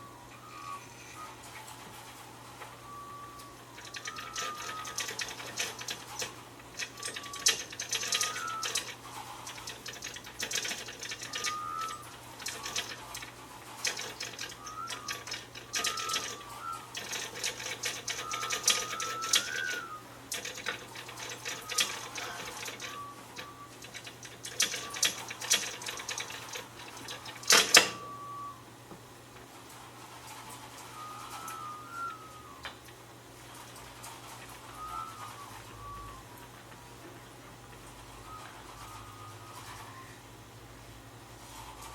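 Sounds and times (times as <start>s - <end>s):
short high squeaks: 0.0s - 28.6s, 30.3s - 32.9s, 38.1s - 40.2s
rapid mechanical clicking: 3.3s - 28.2s, 29.4s - 40.0s.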